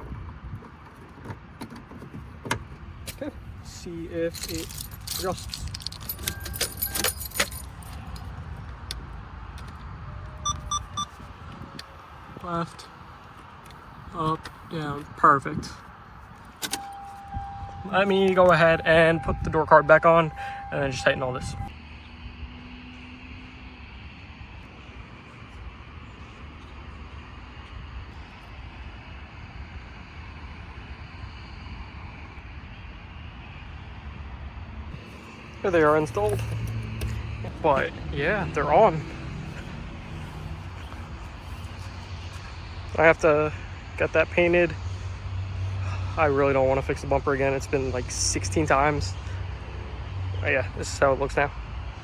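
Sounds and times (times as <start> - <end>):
keys jingling and clicking: 4.3 - 8.4, 16.4 - 21.7, 35.9 - 38.0
short electronic beeps: 10.4 - 11.1, 16.7 - 21.7
steady low hum: 12.8 - 21.7.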